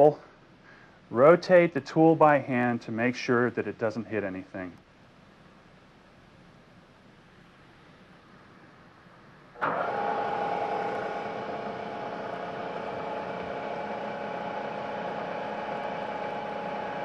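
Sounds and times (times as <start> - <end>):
milling machine spindle whine: 9.6 - 17.0.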